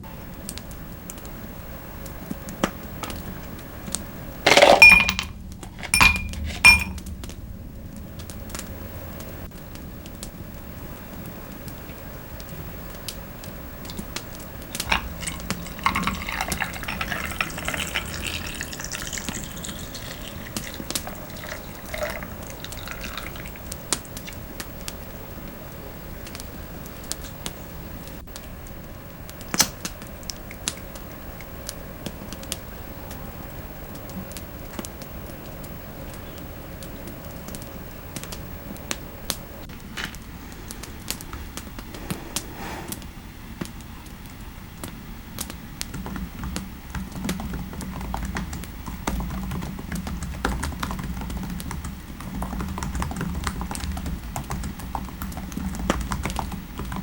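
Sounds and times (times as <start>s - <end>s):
faint fireplace crackle: 0.0s - 4.7s, 5.3s - 49.1s
liquid being poured: 4.4s - 7.0s, 14.6s - 24.5s
ceramic cup clinking: 4.5s - 7.0s, 14.8s - 23.4s.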